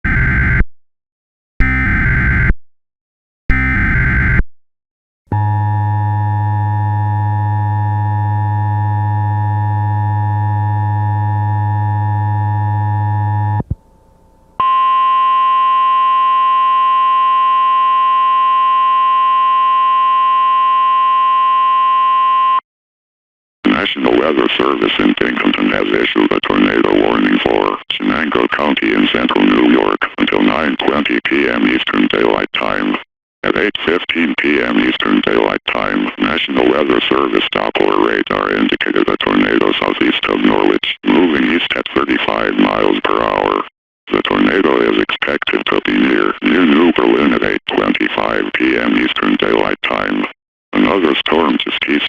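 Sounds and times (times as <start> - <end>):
buzzing two-tone attention signal: 0.1 - 0.6, 1.6 - 2.5, 3.5 - 4.4, 5.3 - 13.6, 14.6 - 22.6.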